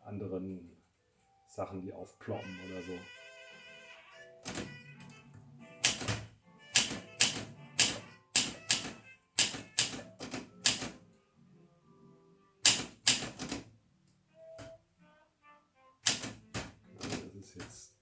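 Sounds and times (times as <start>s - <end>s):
typewriter keys clacking: 5.8s - 11.0s, 12.6s - 13.7s, 16.0s - 17.3s.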